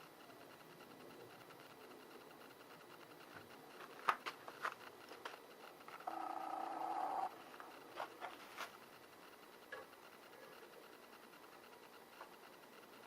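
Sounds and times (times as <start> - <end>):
steady buzzing tone: 0.0 - 13.0
faint clicks and taps: 7.4 - 13.0.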